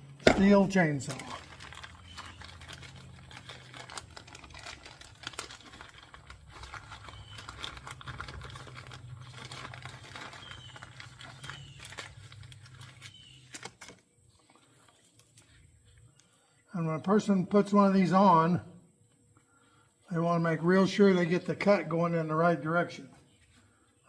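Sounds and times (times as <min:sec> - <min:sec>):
packaging crinkling and tearing: 0:00.3 - 0:14.0.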